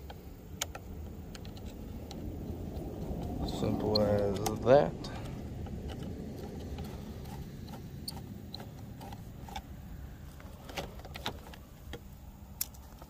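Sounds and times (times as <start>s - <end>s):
screwdriver clicks and scrapes: 0.0s - 4.6s, 5.2s - 9.7s
low rumble: 0.0s - 10.6s.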